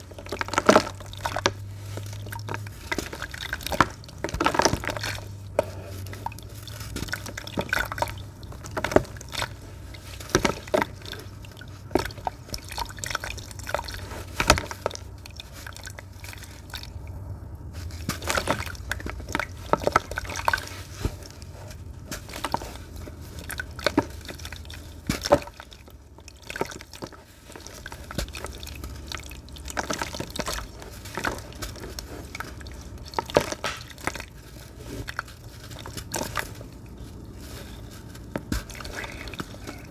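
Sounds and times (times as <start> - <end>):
sand plopping into water: 17.9 - 34.4.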